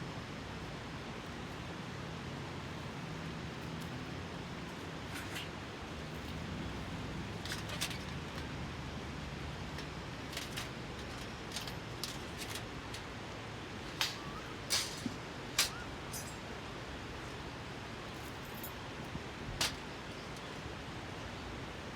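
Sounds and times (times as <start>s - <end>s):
steady background hiss: 0.0s - 21.9s.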